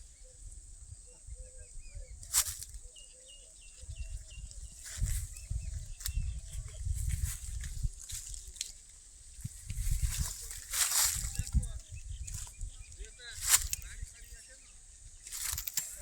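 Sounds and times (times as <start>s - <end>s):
faint bird chirps: 0.0s - 8.4s, 9.2s - 16.0s
low wind rumble: 0.0s - 15.7s
sharp clicks: 15.3s - 16.0s.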